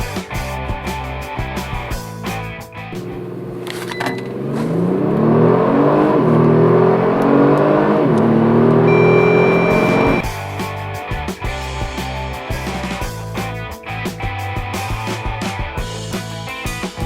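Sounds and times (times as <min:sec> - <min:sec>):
car engine accelerating hard: 0:02.9 - 0:10.4
steady high beep: 0:08.8 - 0:10.3.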